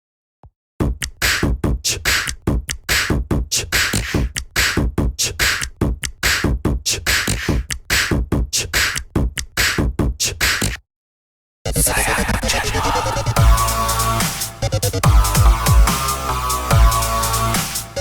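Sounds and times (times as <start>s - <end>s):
electronic drum-machine beat: 0.8s - 10.8s, 11.7s - 18.0s
deep bass: 12.6s - 18.0s.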